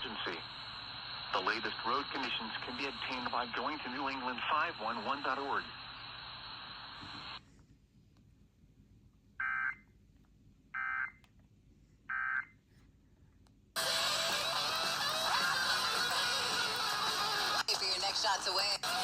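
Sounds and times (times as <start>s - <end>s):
fm radio broadcast: 0.0s - 7.4s, 13.8s - 19.0s
radio hiss: 0.0s - 7.4s, 13.8s - 19.0s.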